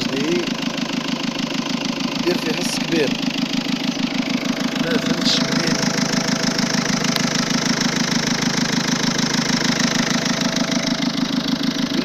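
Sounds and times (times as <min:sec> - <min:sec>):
diesel engine clattering: 0:00.0 - 0:12.0.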